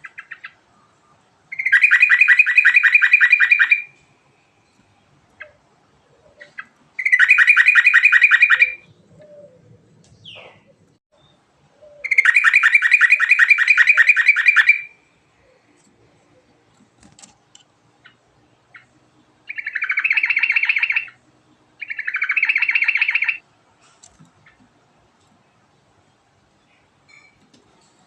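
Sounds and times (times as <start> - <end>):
bird singing fast trills: 1.5 - 3.9, 6.4 - 9.4, 12.0 - 15.1, 18.0 - 21.2, 21.8 - 23.4.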